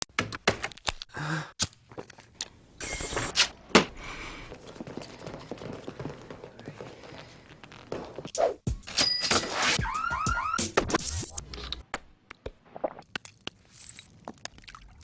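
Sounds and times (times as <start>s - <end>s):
busy rustling: 3.6s - 8.3s.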